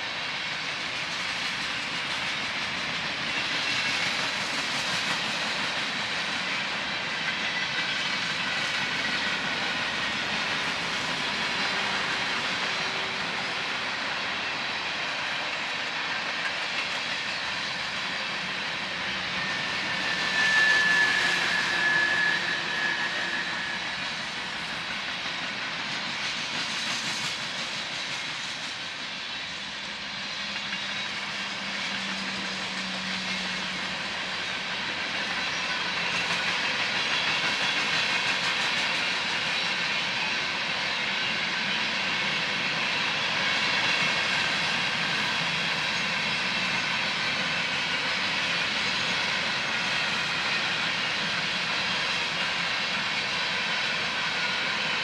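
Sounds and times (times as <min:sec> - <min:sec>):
freight train rolling past: 0:00.0 - 0:55.0.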